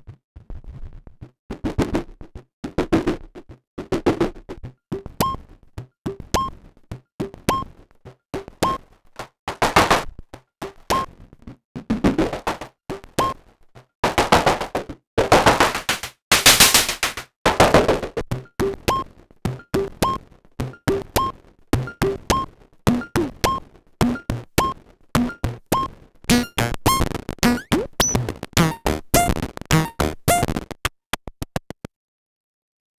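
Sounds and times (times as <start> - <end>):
electronic blip: 19.6 - 30.8
low electronic thumps: 21.8 - 30.8.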